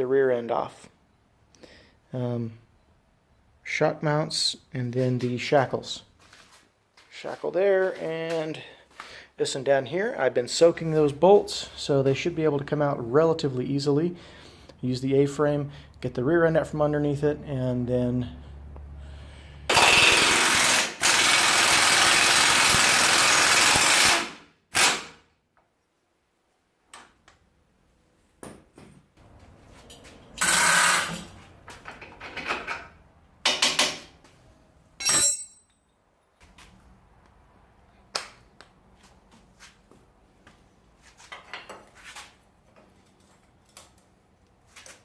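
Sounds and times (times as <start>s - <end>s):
power tool on bolts: 19.7s - 25.2s, 30.4s - 31.3s
sharp metal knocks: 32.4s - 34.1s.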